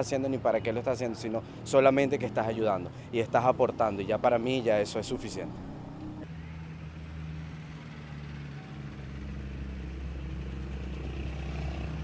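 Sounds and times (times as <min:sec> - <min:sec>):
low motor hum: 0:05.1 - 0:06.2.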